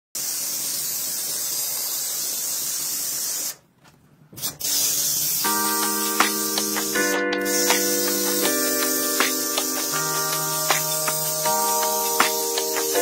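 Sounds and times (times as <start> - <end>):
high-pressure water jet spraying: 0.2 - 3.6, 4.4 - 13.0
music with sustained tones: 5.5 - 13.0.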